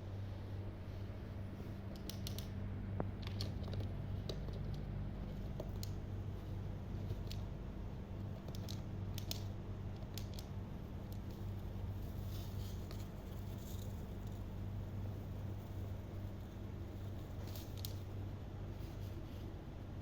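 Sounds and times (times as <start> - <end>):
low electrical hum: 0.0 - 20.0
parrot beak and claw clicks: 2.0 - 2.5.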